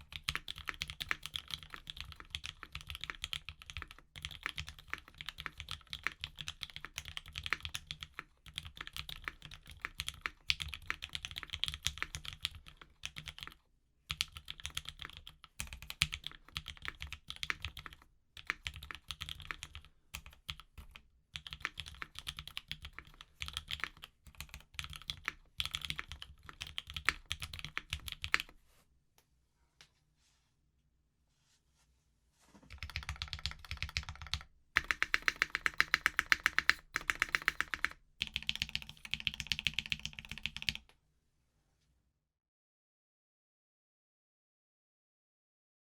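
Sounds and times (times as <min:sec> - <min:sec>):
fast typing on mechanical keyboard: 0:00.0 - 0:28.5, 0:32.7 - 0:40.9.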